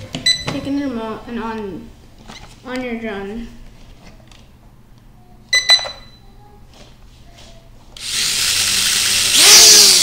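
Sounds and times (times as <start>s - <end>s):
short electronic beeps: 5.5s - 6.2s
toy drone motors whirring: 8.0s - 10.0s.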